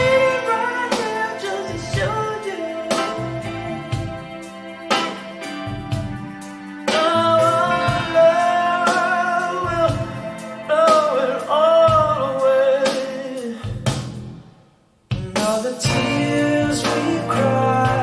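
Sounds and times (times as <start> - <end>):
person singing: 0.0 - 5.6, 6.5 - 13.7, 15.2 - 18.0
strummed guitar: 15.8 - 18.0.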